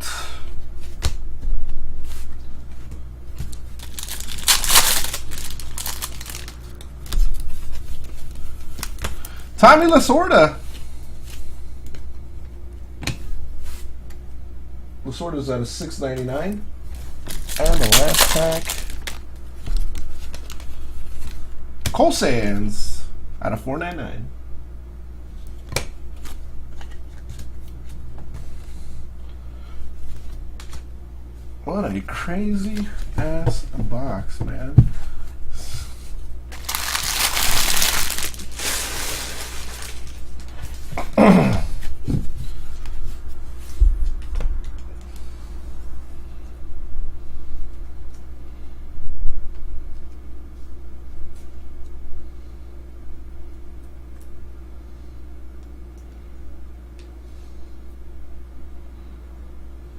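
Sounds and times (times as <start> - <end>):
steady low hum: 0.0 - 59.9
cards flipped through by hand: 3.4 - 9.3, 17.2 - 21.4, 36.5 - 40.7
wrapper crinkling and tearing: 3.5 - 7.4, 8.3 - 9.0, 17.0 - 19.2, 36.5 - 40.8.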